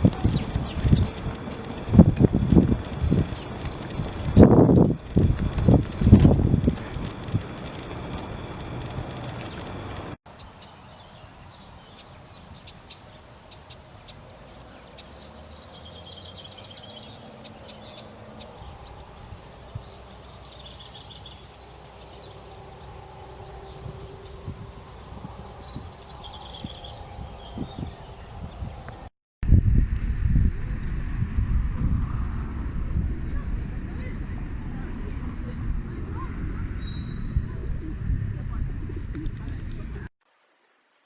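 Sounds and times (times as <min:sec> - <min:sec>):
songbird high note and trill: 0:00.0 - 0:10.2
steady outdoor background noise: 0:00.0 - 0:29.1, 0:29.8 - 0:41.0.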